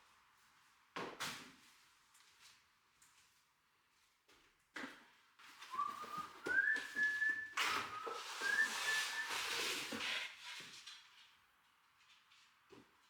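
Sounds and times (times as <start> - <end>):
whistled notes gliding up: 5.8 - 9.6.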